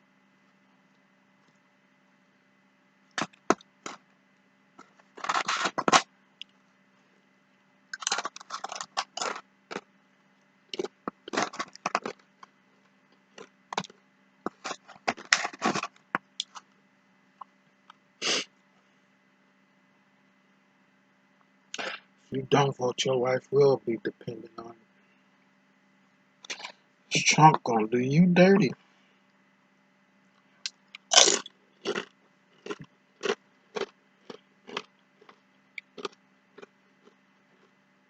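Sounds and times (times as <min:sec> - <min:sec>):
food crunching: 0:03.2 - 0:04.0, 0:05.2 - 0:06.6, 0:08.0 - 0:09.9, 0:10.7 - 0:12.5, 0:13.4 - 0:13.9, 0:14.5 - 0:16.6, 0:26.4 - 0:26.8, 0:30.7 - 0:37.8
utensils clicking and scraping: 0:08.0 - 0:09.4.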